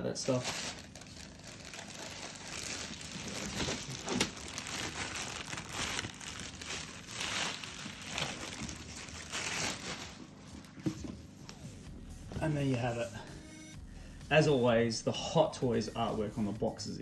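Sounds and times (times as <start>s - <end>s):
plastic wrapping crinkling: 0.1s - 11.3s.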